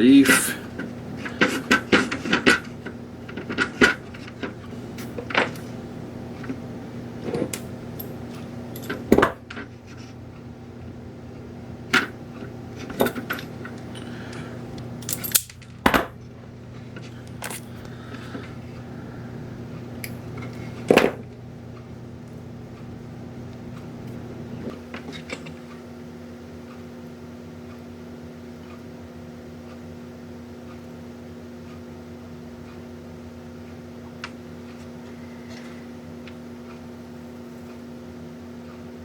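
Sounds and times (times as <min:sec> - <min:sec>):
steady low hum: 0:00.0 - 0:39.0
small parts clicking and knocking: 0:15.0 - 0:16.1.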